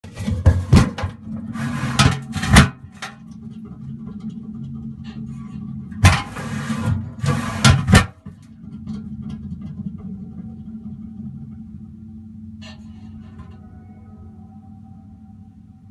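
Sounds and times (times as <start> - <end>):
metal clanks and clicks: 0.0 - 11.7
machine humming: 0.0 - 15.9.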